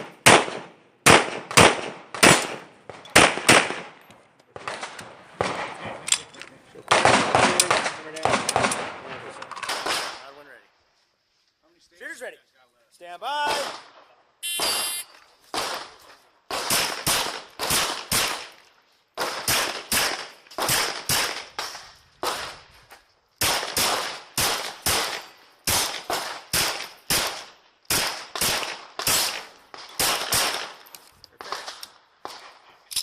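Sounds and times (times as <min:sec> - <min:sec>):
pistol shots: 0:00.0 - 0:04.0, 0:15.6 - 0:18.5, 0:19.2 - 0:22.6, 0:23.4 - 0:30.8.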